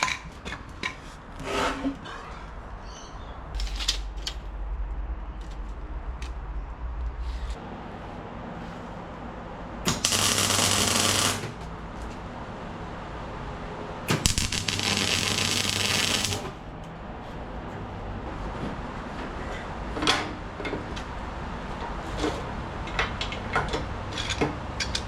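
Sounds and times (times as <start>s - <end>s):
steady hum: 3.4s - 19.0s
arc welding crackling: 9.9s - 11.7s, 14.1s - 16.7s.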